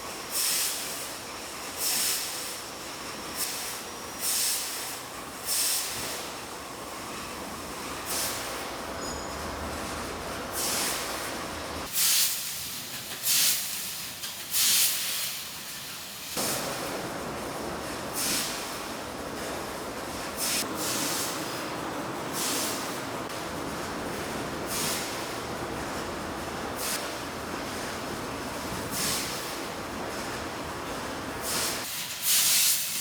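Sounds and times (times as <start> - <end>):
steady background noise: 0.0 - 12.0, 15.6 - 32.2
laser cutter gas hisses: 11.9 - 16.5, 31.4 - 33.0.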